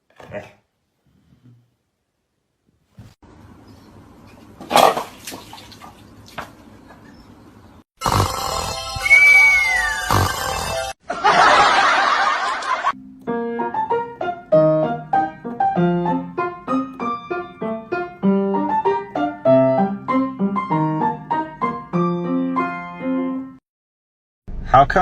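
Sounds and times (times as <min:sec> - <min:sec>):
solo piano melody: 0:13.0 - 0:23.6.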